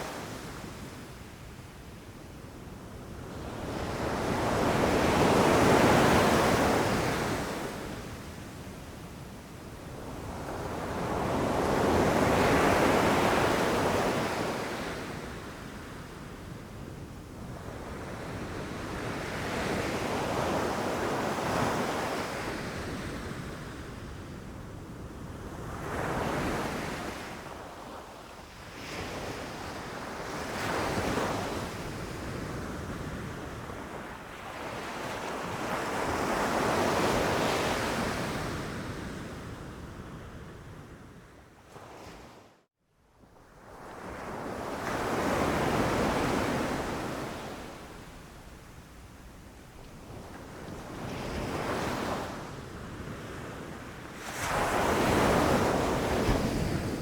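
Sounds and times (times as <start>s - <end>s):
ocean waves crashing on shore: 53.2s - 57.0s.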